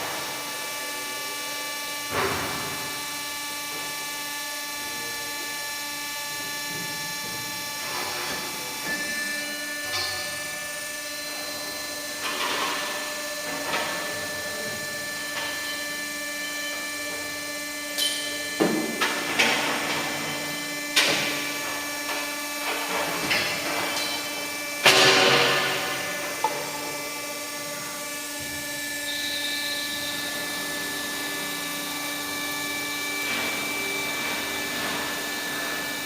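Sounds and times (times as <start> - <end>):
band saw humming: 2.9 - 36.0.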